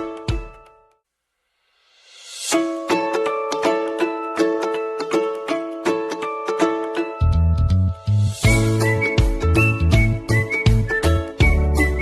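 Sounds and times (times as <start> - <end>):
light plucked-string music: 0.0 - 1.0, 2.4 - 12.0.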